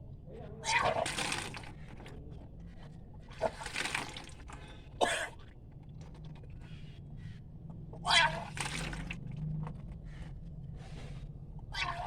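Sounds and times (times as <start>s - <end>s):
water gushing and splashing: 0.8s - 2.0s, 3.4s - 4.6s, 8.2s - 9.4s.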